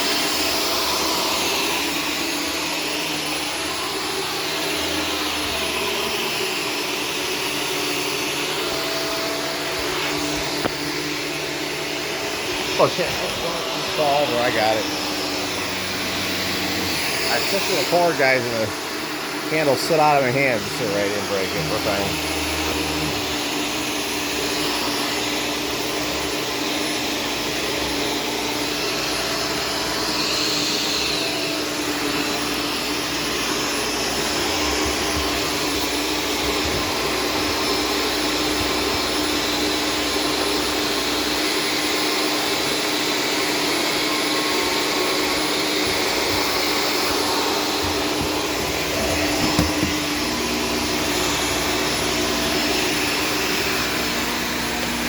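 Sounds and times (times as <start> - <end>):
vacuum cleaner running: 0.0 - 55.0
knocks: 47.8 - 50.1.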